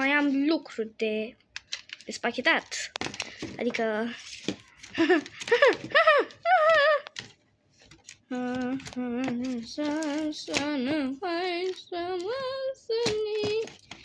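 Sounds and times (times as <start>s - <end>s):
woman singing wordless tune: 8.3s - 13.8s.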